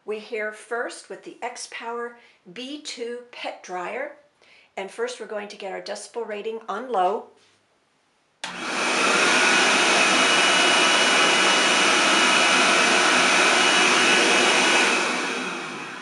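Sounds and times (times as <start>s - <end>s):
pet dryer blower running: 8.4s - 16.0s.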